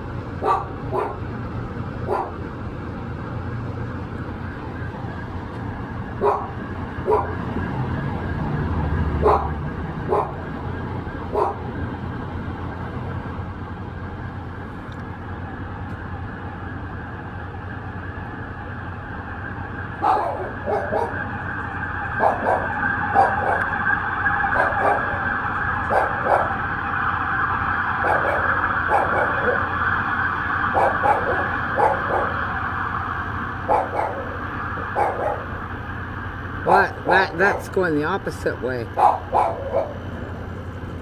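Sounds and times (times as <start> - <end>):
distant emergency siren: 0.0 - 41.0
low city rumble: 0.0 - 41.0
dog barking: 0.4 - 1.3, 2.0 - 2.4, 6.2 - 7.4, 9.2 - 10.4, 11.3 - 11.6, 20.0 - 21.2, 22.2 - 23.7, 24.6 - 25.2, 25.9 - 26.6, 28.0 - 29.7, 30.8 - 32.4, 33.7 - 35.5, 39.0 - 40.0.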